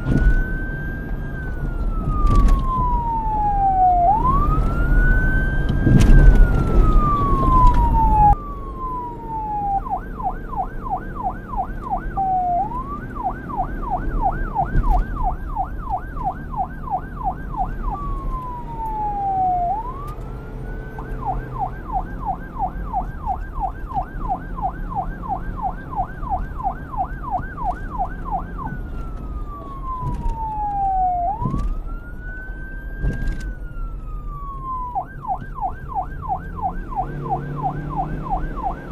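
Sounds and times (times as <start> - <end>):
police siren wailing and yelping: 0.0 - 38.9.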